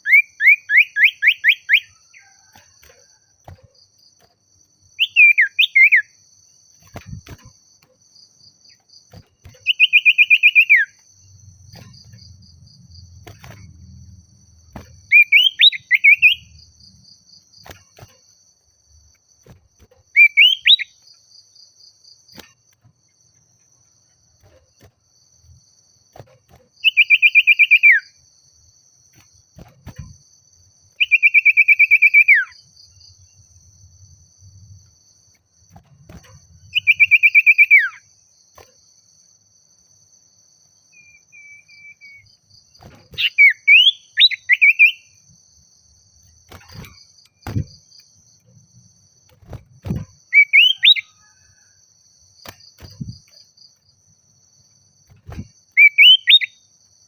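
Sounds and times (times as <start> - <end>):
bird singing whistles and trills: 0.0 - 2.0, 5.0 - 6.2, 9.5 - 11.0, 15.1 - 16.6, 20.1 - 21.0, 26.8 - 28.2, 31.0 - 32.6, 36.7 - 38.0, 40.9 - 42.4, 43.1 - 45.2, 49.9 - 51.6, 55.3 - 56.6
high insect drone: 0.0 - 57.0.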